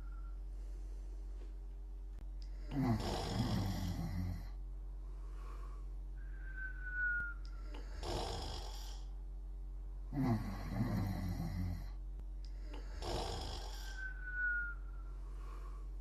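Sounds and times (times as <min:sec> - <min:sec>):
thin high whistle: 0:00.0 - 0:00.4, 0:06.2 - 0:07.6, 0:14.0 - 0:15.2
snoring: 0:02.5 - 0:04.6, 0:07.6 - 0:09.1, 0:10.1 - 0:12.0, 0:12.6 - 0:14.2.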